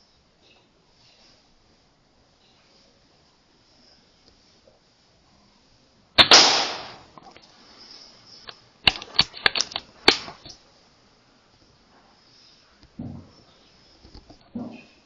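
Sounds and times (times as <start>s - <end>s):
air rifle shot crack: 6.2s - 7.1s
sharp metallic clicks: 8.4s - 10.6s.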